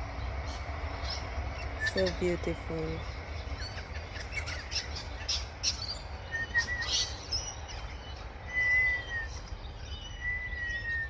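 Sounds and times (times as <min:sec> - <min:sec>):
whistled bird notes: 0:00.5 - 0:02.2, 0:03.0 - 0:11.0
sharp bird chirps: 0:03.0 - 0:11.0.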